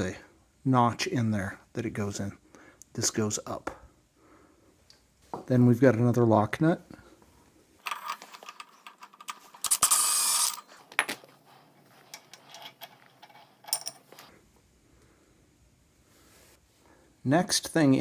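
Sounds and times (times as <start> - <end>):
hand tools clinking on metal: 12.0 - 14.3.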